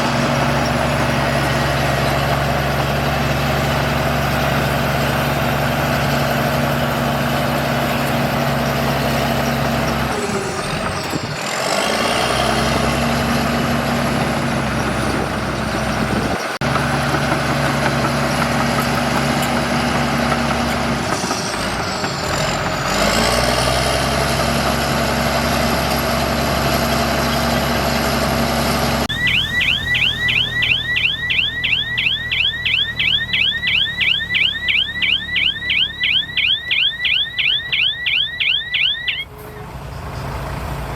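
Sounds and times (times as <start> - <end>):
high engine whine: 0.0 - 22.8, 23.4 - 40.9
bulldozer diesel engine: 0.0 - 40.9
rapid high chirp: 29.1 - 39.2.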